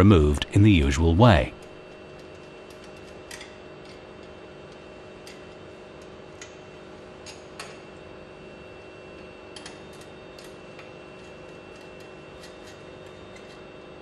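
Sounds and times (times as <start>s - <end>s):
steady hum: 0.0s - 2.0s.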